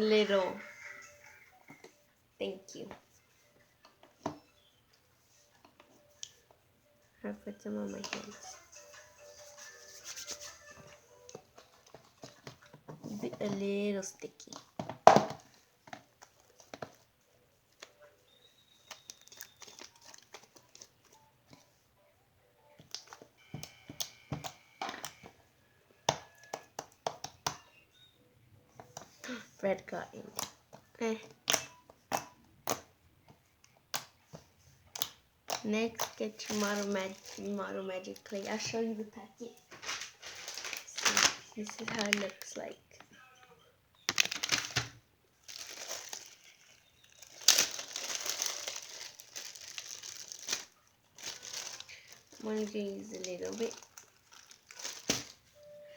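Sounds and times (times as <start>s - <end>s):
clay packet crinkling: 17.8s - 21.2s, 35.5s - 43.0s, 44.1s - 55.6s.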